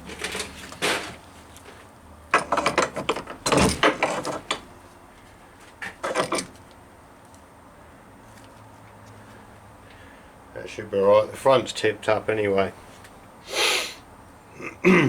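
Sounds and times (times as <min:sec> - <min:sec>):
metallic clanks and rattling: 0:00.0 - 0:01.2, 0:02.3 - 0:04.7, 0:05.9 - 0:06.6.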